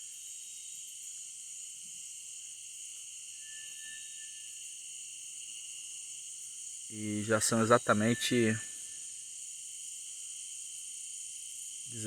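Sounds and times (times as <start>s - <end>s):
insect chorus shrill drone: 0.0s - 12.0s
faint whistled note: 3.3s - 4.7s, 8.0s - 9.0s.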